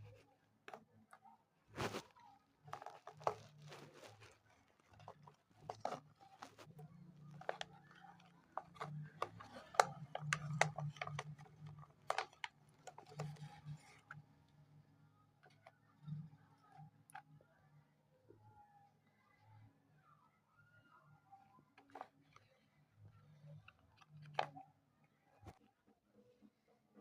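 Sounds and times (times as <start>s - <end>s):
craft materials crinkling and tapping: 0.0s - 14.3s, 21.8s - 22.6s, 23.5s - 24.7s.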